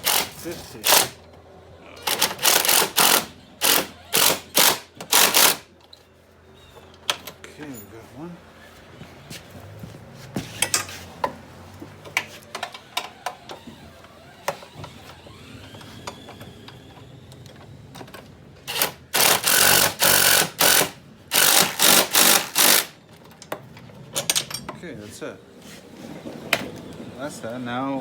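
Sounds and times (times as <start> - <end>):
power driver bursts: 2.0 - 5.6, 18.7 - 23.0
metal tools and bolts clinking: 10.6 - 11.0, 23.3 - 24.9.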